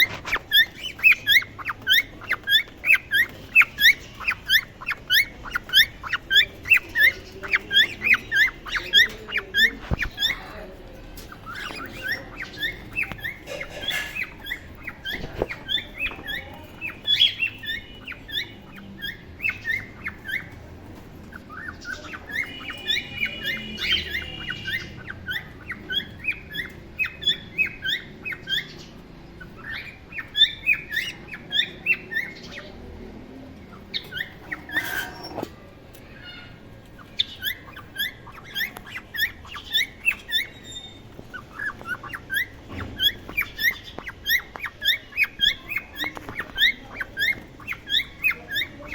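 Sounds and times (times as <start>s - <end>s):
cockatiels chirping: 0.0s - 48.9s
whistled bird notes: 21.4s - 28.8s.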